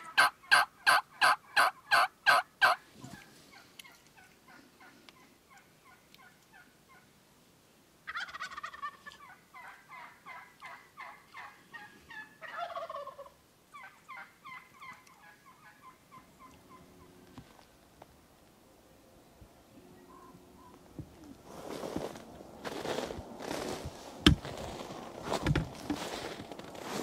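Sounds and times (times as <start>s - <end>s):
wild turkeys calling: 0.0s - 7.1s, 8.0s - 17.7s, 19.6s - 21.5s.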